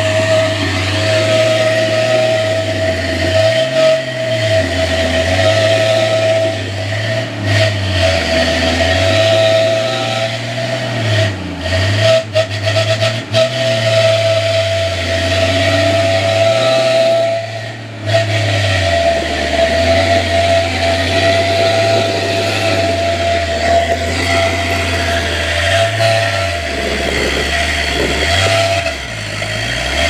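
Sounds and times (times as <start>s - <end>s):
engine revving under load: 0.0s - 30.0s
steady high whine: 14.1s - 29.6s.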